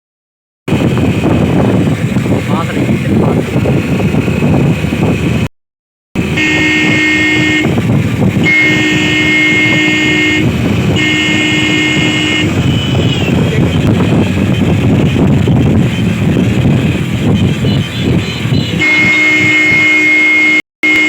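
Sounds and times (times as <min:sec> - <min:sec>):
motorcycle rumble: 0:00.7 - 0:05.5, 0:06.2 - 0:21.0
wind: 0:00.7 - 0:05.5, 0:06.2 - 0:21.0
motorcycle horn honking: 0:06.3 - 0:21.0.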